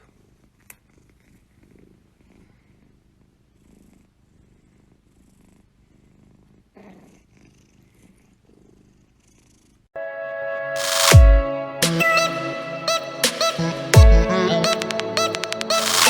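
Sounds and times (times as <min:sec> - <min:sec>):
cat purring softly: 0:00.1 - 0:09.8.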